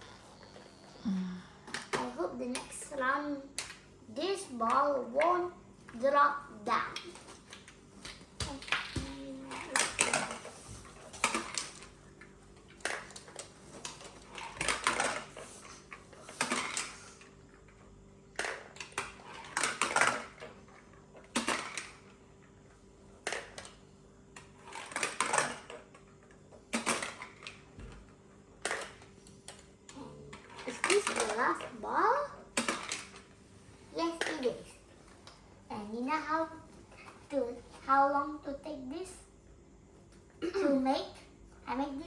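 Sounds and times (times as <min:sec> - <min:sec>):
balls rattling down marble run: 0:08.4 - 0:10.6, 0:30.4 - 0:31.8.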